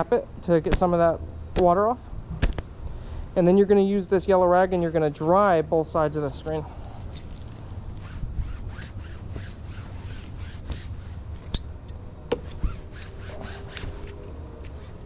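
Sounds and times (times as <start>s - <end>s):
rag wiping window screen: 7.9s - 11.4s, 12.4s - 15.0s.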